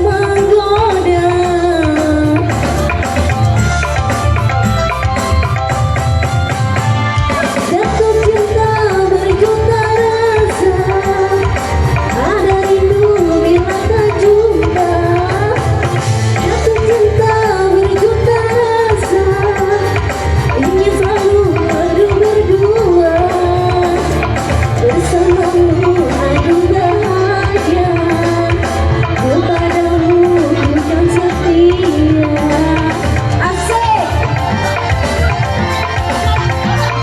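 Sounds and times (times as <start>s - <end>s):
hand drum rhythm: 0.0s - 37.0s.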